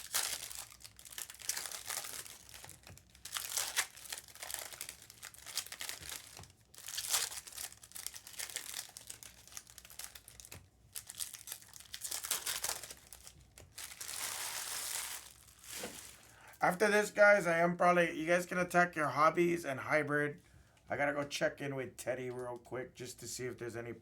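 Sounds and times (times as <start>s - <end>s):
card pack wrappers crinkling: 0.0s - 17.5s.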